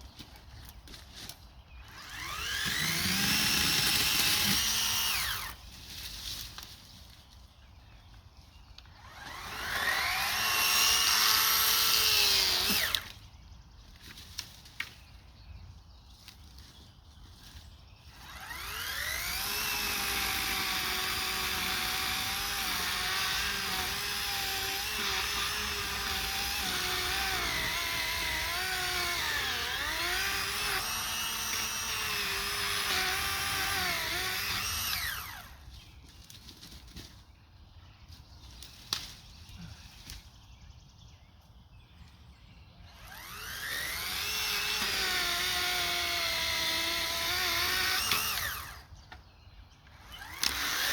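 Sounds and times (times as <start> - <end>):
electric chainsaw cutting wood: 1.8 - 5.6, 8.8 - 13.2, 18.1 - 35.6, 42.8 - 48.9, 49.9 - 50.9.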